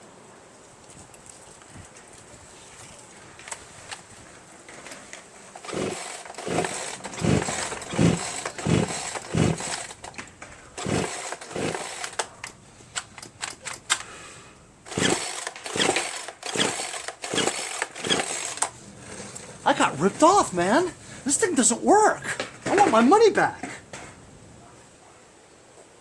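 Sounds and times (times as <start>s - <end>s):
chainsaw pull-start cranking: 4.7s - 24.3s.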